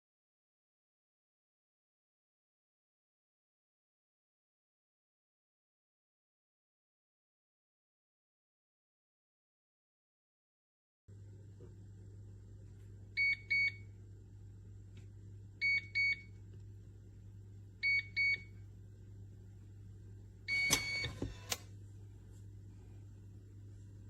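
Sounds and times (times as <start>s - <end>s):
electronic keypad beeps: 20.5s - 21.5s.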